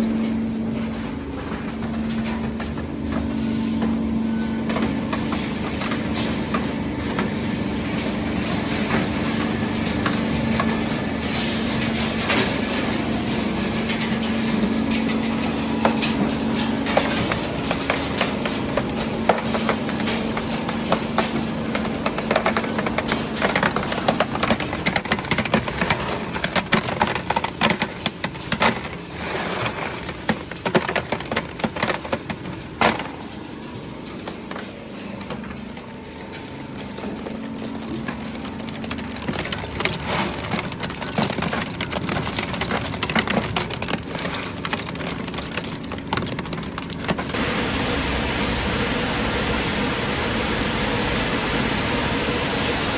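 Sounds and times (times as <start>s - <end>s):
recycling machinery running: 0.0s - 52.9s
scrap pieces clattering: 15.1s - 47.4s.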